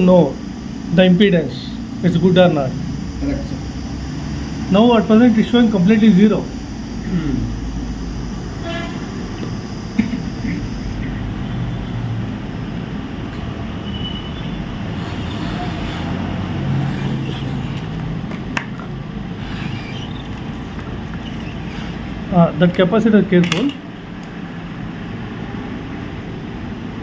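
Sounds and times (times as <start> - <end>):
hot-air rework station blowing: 14.6 - 22.9.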